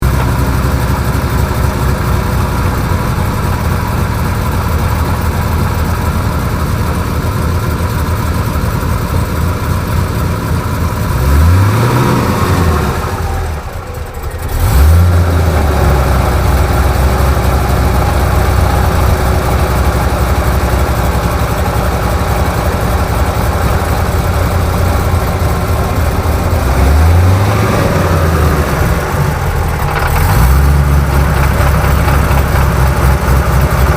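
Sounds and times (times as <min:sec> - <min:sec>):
car engine idling with rattle: 0:00.0 - 0:33.9
engine revving: 0:09.8 - 0:33.9.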